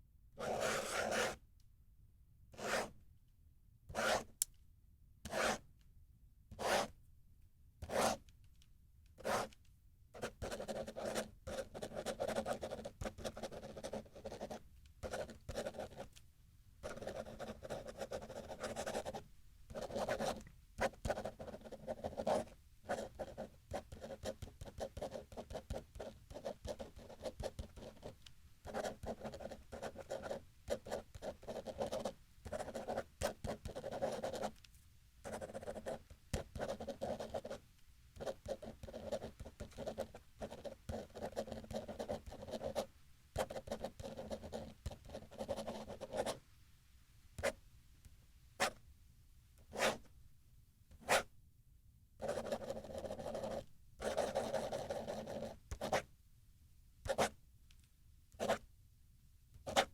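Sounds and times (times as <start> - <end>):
ballpoint pen writing on paper: 0.4 - 1.4, 2.6 - 3.0, 3.9 - 4.4, 5.2 - 5.6, 6.5 - 6.9, 7.8 - 8.3, 9.2 - 9.6, 10.2 - 16.1, 16.8 - 34.6, 35.3 - 37.6, 38.2 - 46.4, 48.6 - 48.8, 49.7 - 50.1, 51.0 - 51.3, 52.2 - 56.1, 57.1 - 57.4, 58.4 - 58.6, 59.6 - 59.9.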